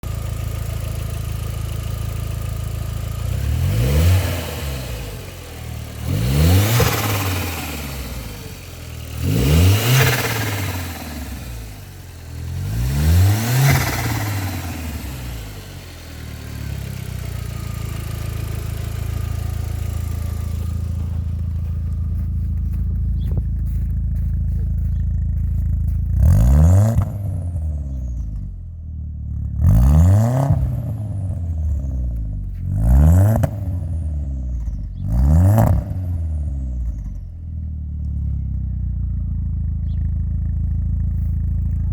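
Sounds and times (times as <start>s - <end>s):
car engine idling and revving: 0.0s - 41.9s.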